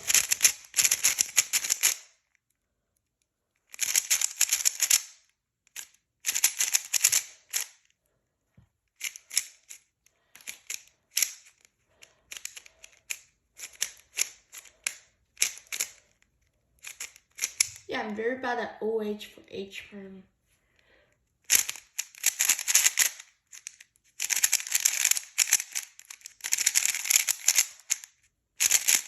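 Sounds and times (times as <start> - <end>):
plastic puzzle cube clicking: 0.0 - 2.4, 3.6 - 7.9, 8.9 - 17.9, 21.4 - 29.0.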